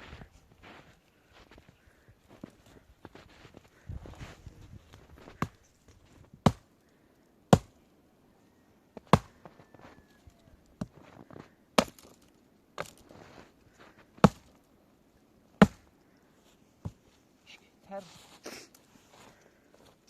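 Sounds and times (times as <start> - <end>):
soft scuffing: 0.0 - 5.4
chopping strikes: 7.5 - 7.8, 11.8 - 12.2, 15.6 - 15.9.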